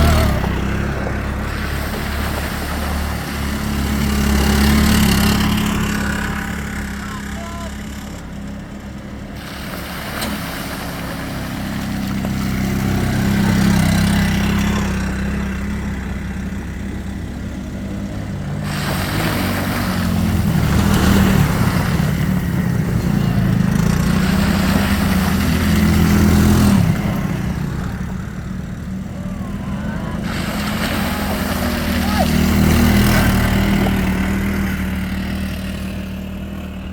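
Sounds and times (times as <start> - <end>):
off-road vehicle engine pulling: 0.0 - 36.9
rushing noise: 29.3 - 35.2.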